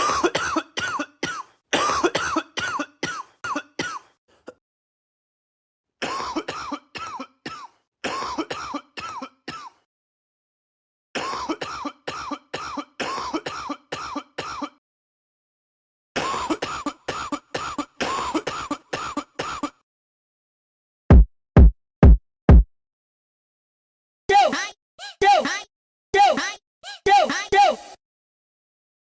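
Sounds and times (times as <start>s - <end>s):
rhythmic cough sample: 0.0s - 4.6s, 6.0s - 9.8s, 11.2s - 14.8s, 16.2s - 19.8s.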